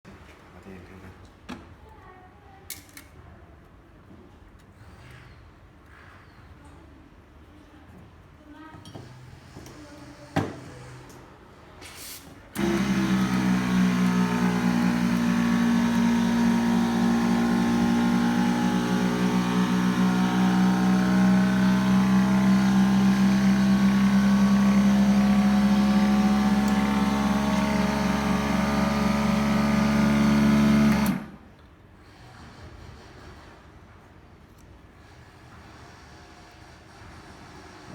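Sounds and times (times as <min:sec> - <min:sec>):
vacuum pump humming: 0:12.6 - 0:31.4.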